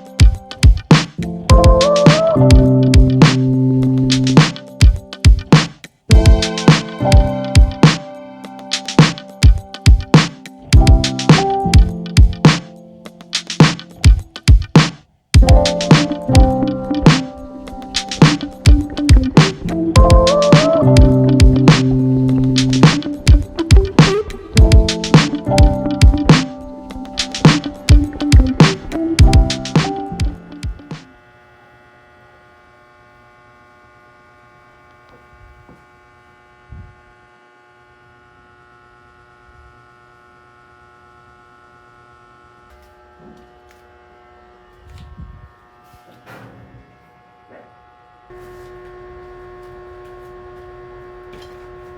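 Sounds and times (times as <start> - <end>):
background music: 0.0 - 14.8, 15.4 - 31.0
steady drum beat: 0.1 - 8.0, 8.7 - 12.7, 13.3 - 17.3, 18.0 - 31.0
sustained melodic tones: 15.4 - 31.0
steady electrical hum: 15.4 - 46.2, 48.0 - 51.9.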